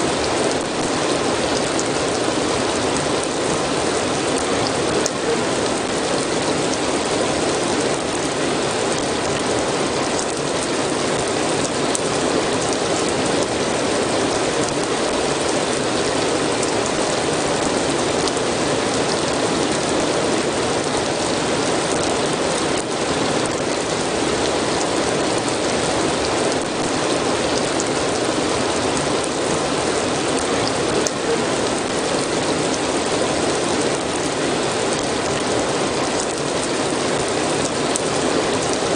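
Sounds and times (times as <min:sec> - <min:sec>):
steady rain hissing: 0:00.0 - 0:38.9
raindrop ticks: 0:10.1 - 0:10.7.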